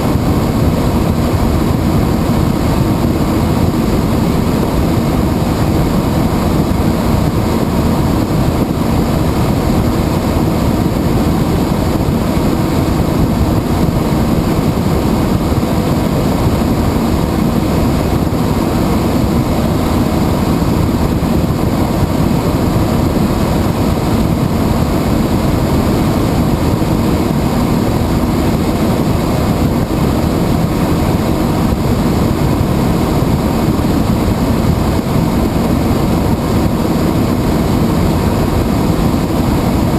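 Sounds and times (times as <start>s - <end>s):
helicopter rotor and engine drone: 0.0s - 39.9s.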